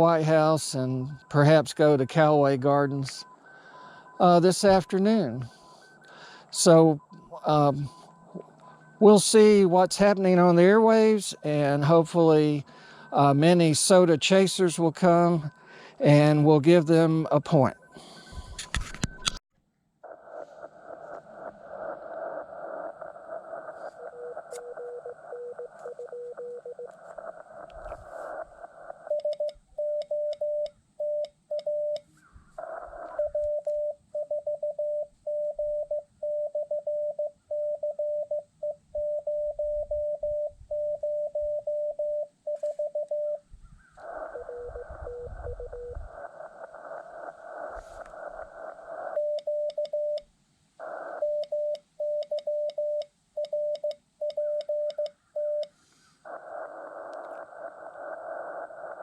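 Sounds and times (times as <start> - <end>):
radio receiver hiss: 0.0 - 19.4, 20.0 - 29.4, 32.0 - 33.6, 43.8 - 49.3, 50.8 - 51.6, 55.4 - 59.0
morse code beeps: 0.3 - 19.4, 29.1 - 32.0, 33.1 - 43.4, 44.0 - 46.0, 49.1 - 50.2, 51.2 - 55.7.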